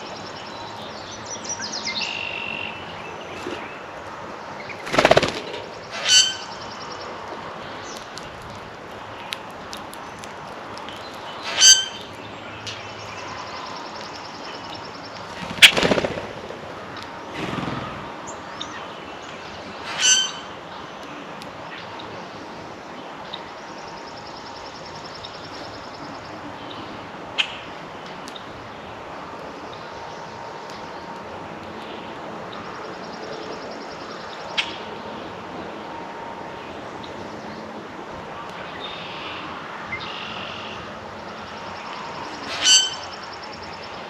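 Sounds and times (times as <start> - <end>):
harsh bird calls: 0.0 - 8.1, 10.9 - 20.9, 38.7 - 44.0
faint high trilling birdsong: 0.0 - 16.0, 16.9 - 44.0.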